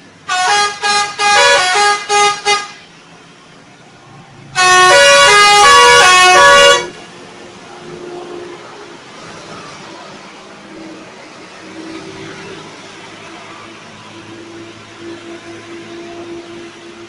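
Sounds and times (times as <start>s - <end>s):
musical bus air horn tune: 0.2s - 3.0s, 4.6s - 7.0s.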